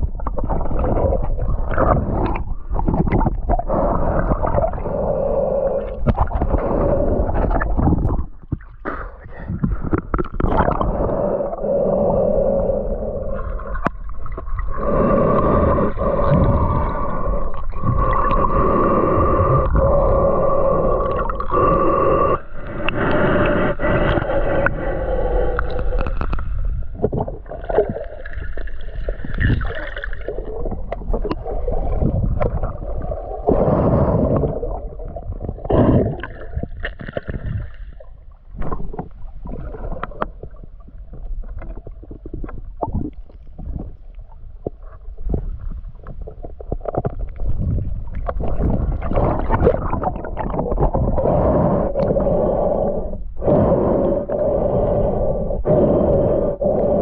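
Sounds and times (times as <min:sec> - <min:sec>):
underwater gurgling: 0:00.0 - 0:57.0.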